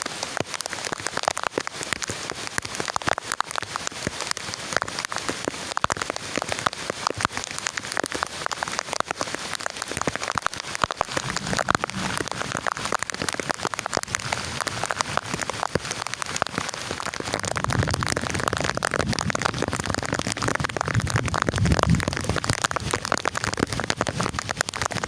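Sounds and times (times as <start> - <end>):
heavy rain pattering: 0.0 - 25.0
low rumble: 11.0 - 14.4.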